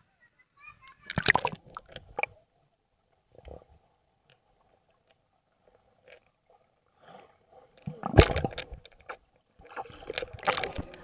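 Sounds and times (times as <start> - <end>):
water splashing: 1.0 - 2.4, 4.6 - 11.0.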